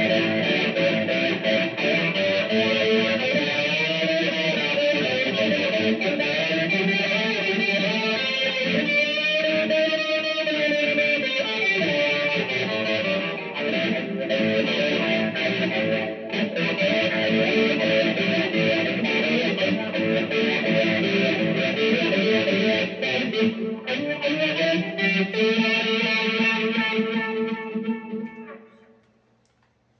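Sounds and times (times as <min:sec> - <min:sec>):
blues guitar playing: 0:00.0 - 0:29.1.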